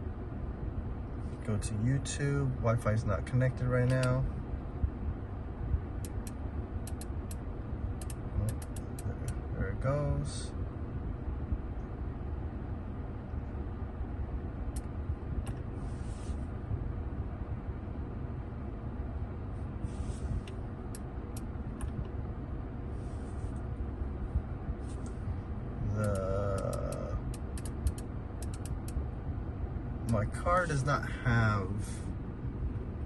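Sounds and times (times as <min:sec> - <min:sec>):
car engine rumble inside cabin: 0:00.0 - 0:33.0
light clicks: 0:26.0 - 0:29.0.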